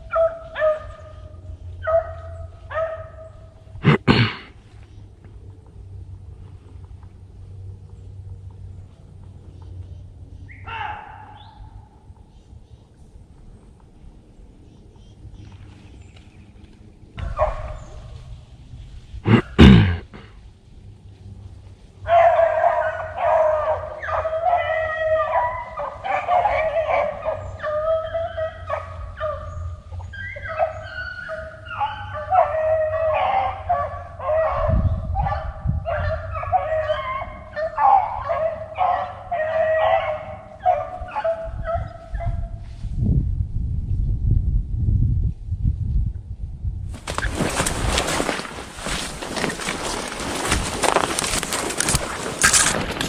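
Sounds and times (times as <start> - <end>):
beagles baying: 0.0 - 5.0, 9.6 - 12.2, 17.2 - 18.4, 22.0 - 42.4.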